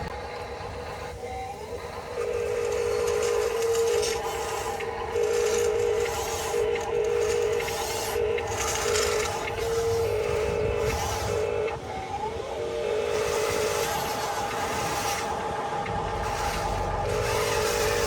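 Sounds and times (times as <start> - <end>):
toy truck motor whining: 0.0 - 18.0.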